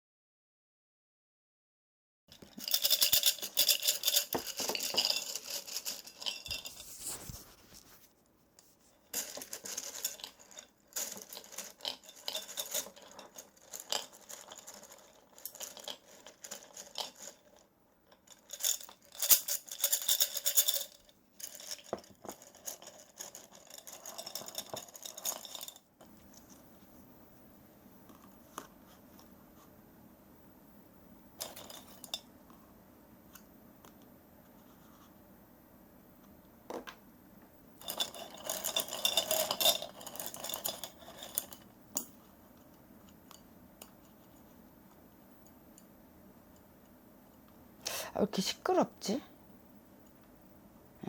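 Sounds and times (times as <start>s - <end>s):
small hard objects rattling: 2.4s - 7.1s, 9.1s - 25.8s, 37.8s - 41.6s.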